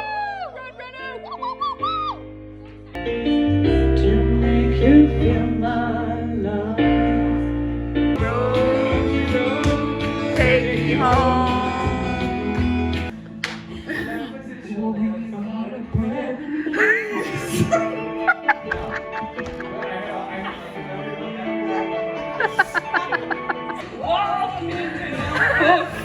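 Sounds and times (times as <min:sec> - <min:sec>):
guitar: 0:00.0 - 0:26.0
person singing: 0:03.7 - 0:07.2, 0:08.2 - 0:13.1, 0:13.7 - 0:21.6
full band with strong bass: 0:08.0 - 0:13.3.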